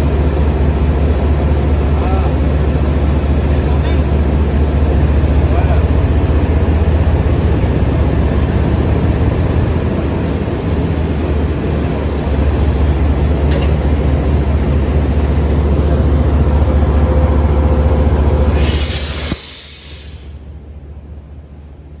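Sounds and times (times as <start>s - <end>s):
diesel locomotive engine droning: 0.0s - 22.0s
loud air hiss: 18.4s - 20.5s.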